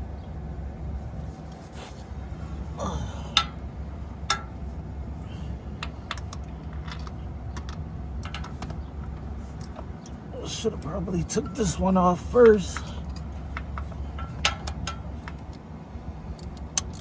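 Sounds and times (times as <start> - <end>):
steady low hum: 0.0 - 17.0
socket ratchet clicking: 16.4 - 17.0.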